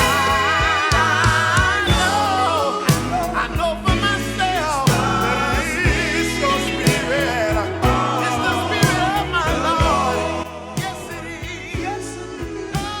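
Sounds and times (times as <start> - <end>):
bass and drums: 0.0 - 13.0
person singing gospel melody: 0.0 - 13.0.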